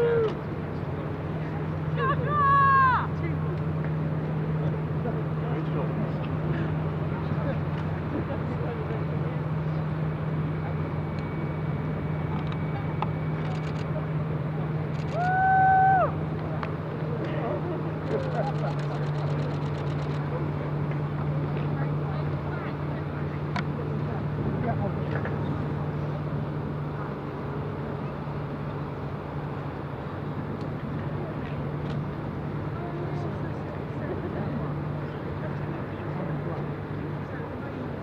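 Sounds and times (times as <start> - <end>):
low engine hum: 0.0 - 38.0
outdoor background noise: 0.0 - 38.0.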